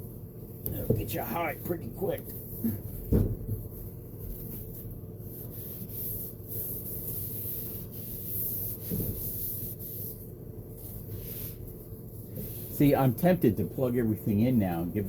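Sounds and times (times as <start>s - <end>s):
small vent fan hum: 0.0s - 15.0s
scratchy scrubbing and rubbing: 3.6s - 15.0s.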